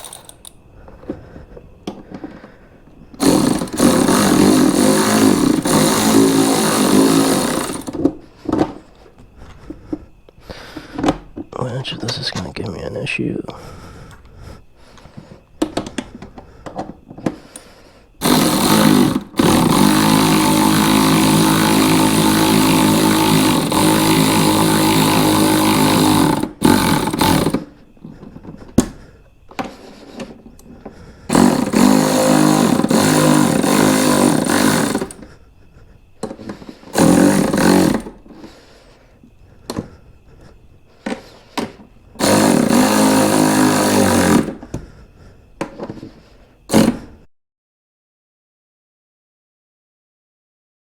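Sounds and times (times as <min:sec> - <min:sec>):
power drill running under load: 0:00.0 - 0:00.5, 0:03.1 - 0:08.8, 0:17.2 - 0:35.4, 0:36.2 - 0:39.0, 0:41.0 - 0:45.0, 0:45.7 - 0:47.1.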